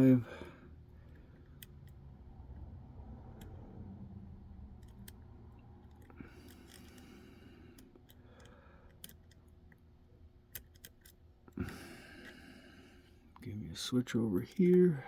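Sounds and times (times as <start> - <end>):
lock pick clicks: 4.7 - 9.8, 10.4 - 12.4
lock pick scraping: 4.8 - 9.8, 10.5 - 12.4.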